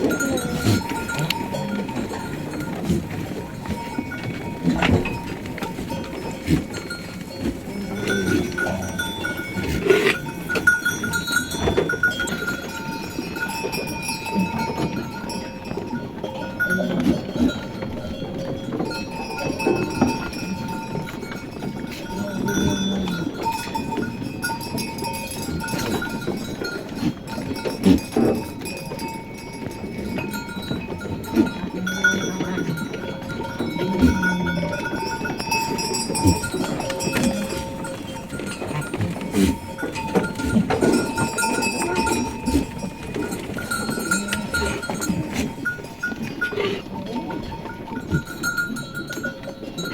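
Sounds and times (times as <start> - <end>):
sheep bleating: 0.0 - 10.6, 33.8 - 34.9
livestock bells jangling: 0.0 - 49.9.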